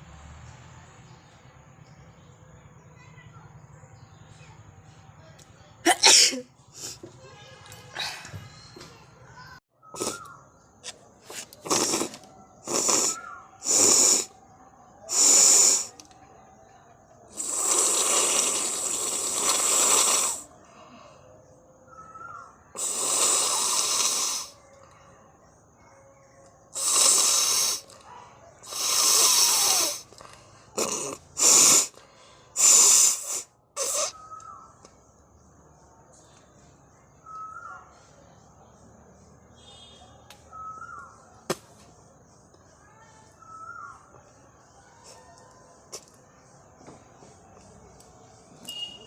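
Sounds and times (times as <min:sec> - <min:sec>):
person blowing nose: 0:10.0 - 0:10.2, 0:11.3 - 0:14.3, 0:15.1 - 0:15.9, 0:17.4 - 0:20.5, 0:26.8 - 0:28.0, 0:28.7 - 0:30.1, 0:30.8 - 0:32.0, 0:32.6 - 0:34.1.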